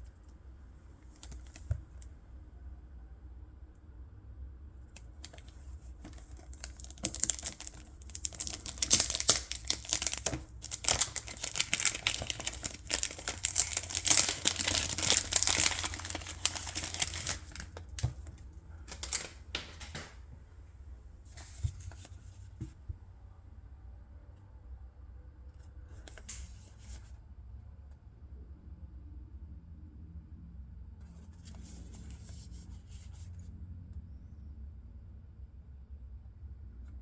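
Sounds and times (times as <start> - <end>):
cellophane crinkling and tearing: 1.1 - 1.7, 5.2 - 20.1.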